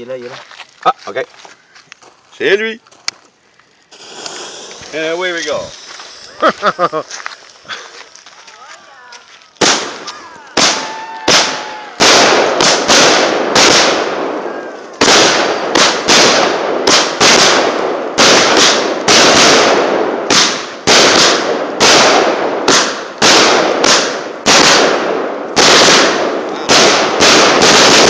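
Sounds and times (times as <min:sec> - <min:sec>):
firework bangs with echo: 0:09.6 - 0:28.0.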